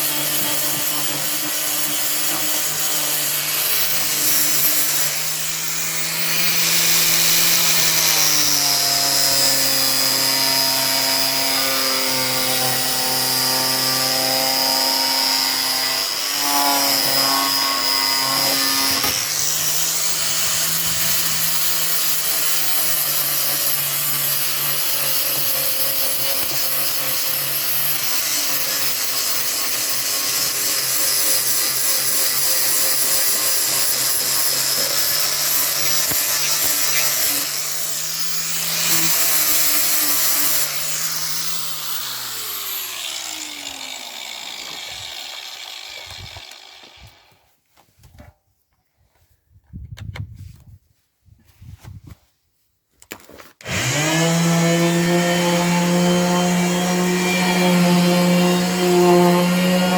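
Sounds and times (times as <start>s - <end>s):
grinder spinning down: 0.0s - 47.3s
angle grinder sanding wood: 0.0s - 47.4s, 53.6s - 59.9s.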